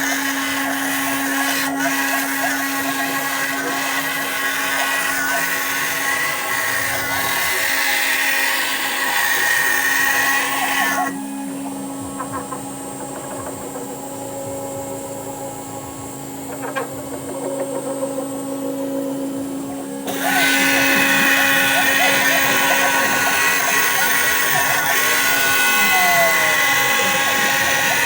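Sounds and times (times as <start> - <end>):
router cutting plastic: 0.0 - 14.0, 20.0 - 28.0
machine hum: 0.0 - 28.0.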